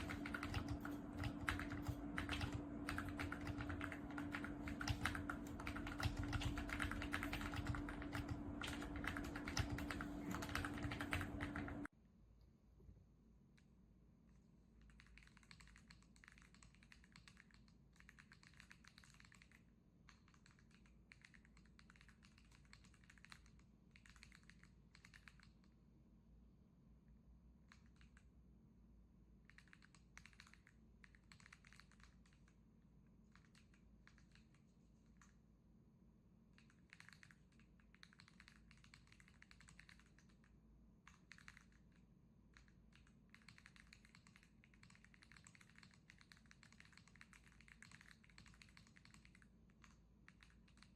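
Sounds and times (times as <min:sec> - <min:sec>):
mechanical keyboard typing: 0:00.0 - 0:11.9, 0:14.8 - 0:25.7, 0:29.5 - 0:32.5, 0:36.6 - 0:40.5, 0:41.1 - 0:42.0, 0:42.6 - 0:50.9.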